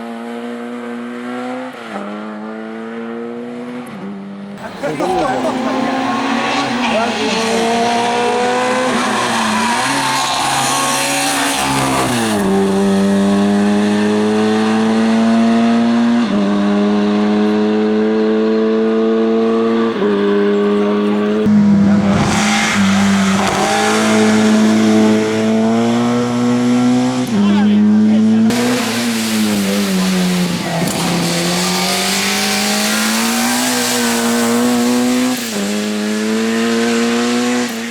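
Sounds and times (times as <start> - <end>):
car engine at full throttle: 0.0 - 37.9
tyre noise hiss: 28.5 - 36.2.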